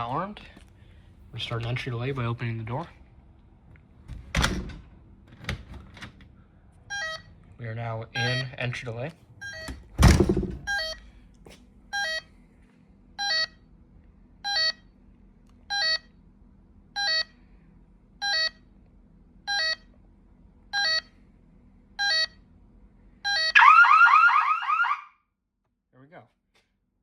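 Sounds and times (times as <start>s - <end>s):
security keypad double beep: 8.2s - 8.5s.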